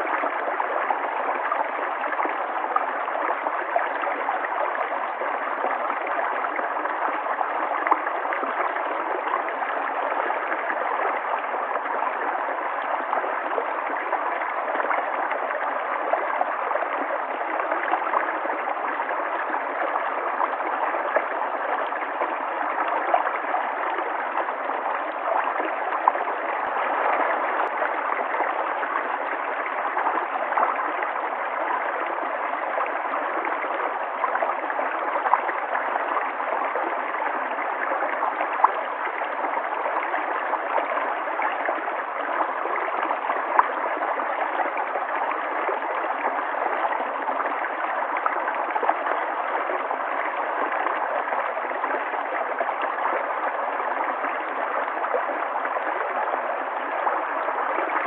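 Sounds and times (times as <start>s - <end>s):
river water flowing: 0.0s - 58.0s
water gurgles and splashes: 0.0s - 58.0s.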